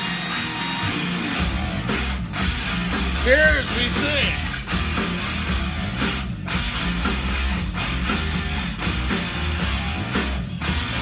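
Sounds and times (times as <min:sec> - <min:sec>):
rock music from vinyl record: 0:00.0 - 0:11.0.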